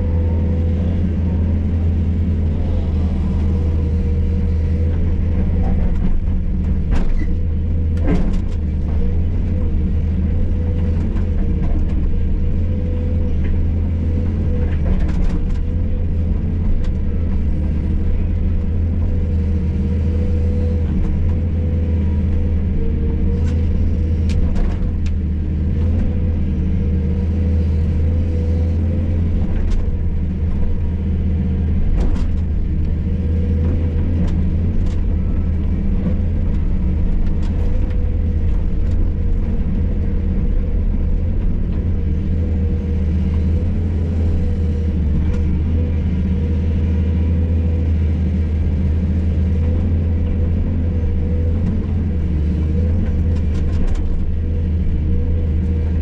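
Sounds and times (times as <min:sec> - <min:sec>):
excavator diesel engine: 0:00.0 - 0:56.0.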